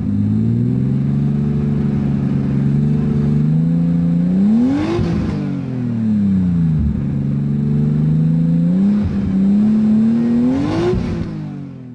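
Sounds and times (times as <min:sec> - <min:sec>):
car engine revving: 0:00.0 - 0:11.9.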